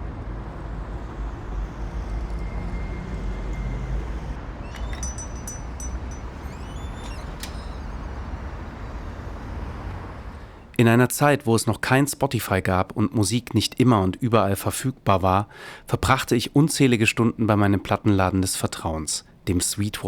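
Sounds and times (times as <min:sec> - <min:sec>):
low rumble of vehicle noise: 0:00.0 - 0:14.9
high chirps and clicks: 0:04.6 - 0:08.0.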